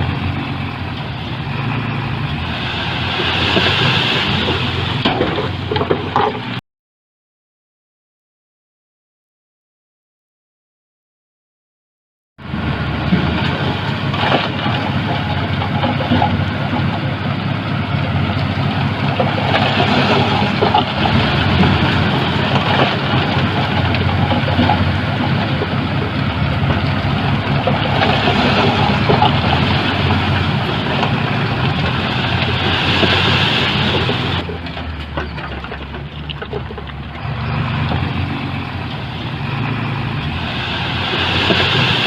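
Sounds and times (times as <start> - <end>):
heavy diesel engine under load: 0.0 - 6.6, 12.4 - 42.0
knocks and clatter: 3.3 - 6.6, 13.0 - 38.9.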